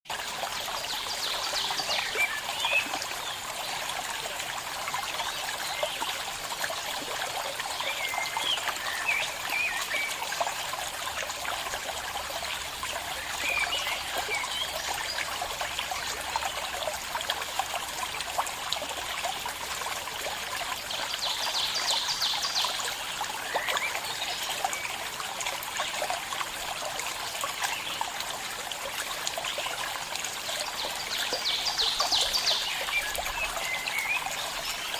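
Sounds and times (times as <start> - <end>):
stream trickling: 0.1 - 34.9.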